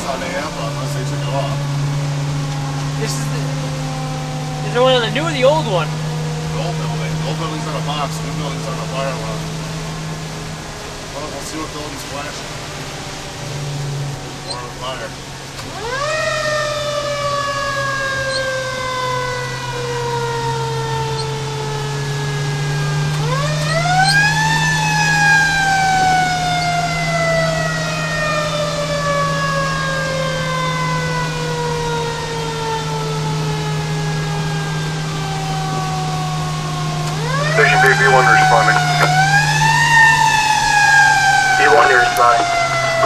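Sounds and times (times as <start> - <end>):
truck engine drone: 0.0 - 43.0
fire engine siren: 12.3 - 43.0.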